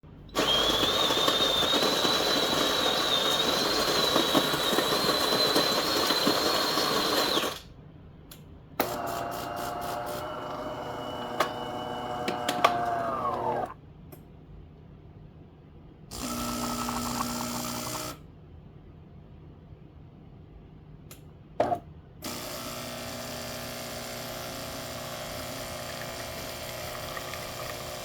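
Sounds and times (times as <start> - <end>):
coffee grinder whining: 0.3 - 7.6, 8.8 - 13.8, 16.1 - 18.1, 22.3 - 28.0
motor humming: 9.7 - 13.8.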